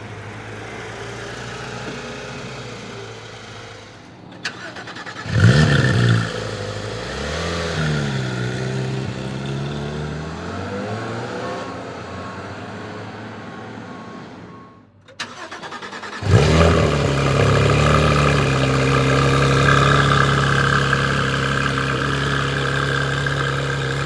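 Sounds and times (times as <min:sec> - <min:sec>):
car engine idling: 0:15.2 - 0:24.0.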